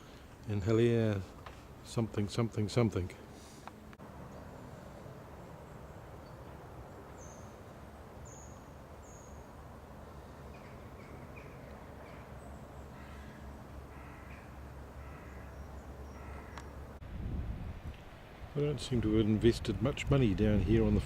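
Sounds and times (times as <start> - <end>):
birds calling: 10.2 - 17.0
harsh repeated bird calls: 10.5 - 16.8.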